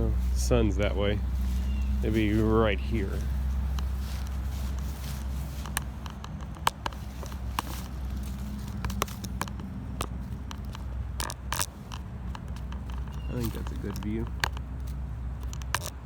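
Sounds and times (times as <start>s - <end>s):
steady low rumble: 0.0s - 16.0s
camera handling clicks and knocks: 3.7s - 16.0s.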